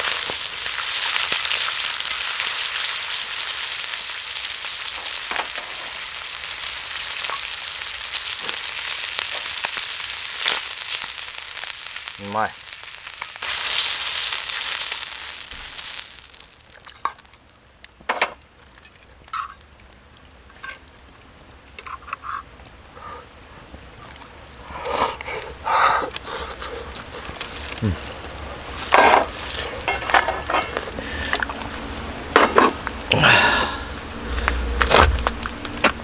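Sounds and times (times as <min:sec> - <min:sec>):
meat sizzling on griddle: 0:00.0 - 0:19.7, 0:23.7 - 0:36.0.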